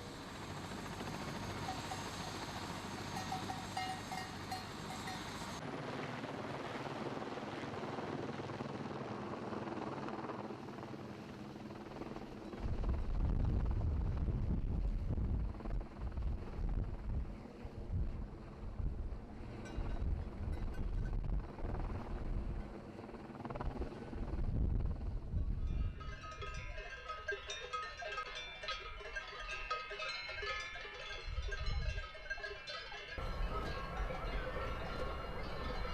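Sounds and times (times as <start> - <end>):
helicopter rotor and engine: 0.0 - 35.9
cowbells clanking: 3.1 - 5.4, 25.7 - 35.9.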